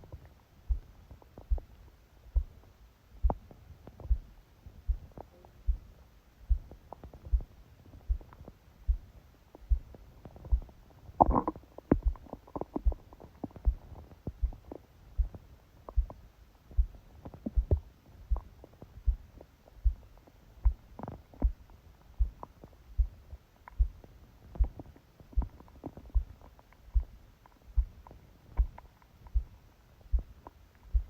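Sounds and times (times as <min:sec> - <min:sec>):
heartbeat thumping: 0:00.0 - 0:31.0
stomach gurgles and pops: 0:06.5 - 0:31.0.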